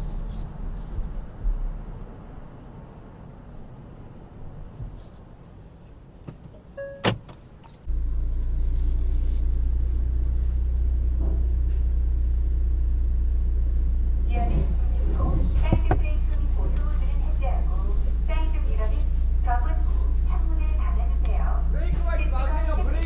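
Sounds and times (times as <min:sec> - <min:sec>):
low mechanical rumble: 0:00.0 - 0:06.2, 0:07.8 - 0:23.0
short beep: 0:06.8 - 0:07.1.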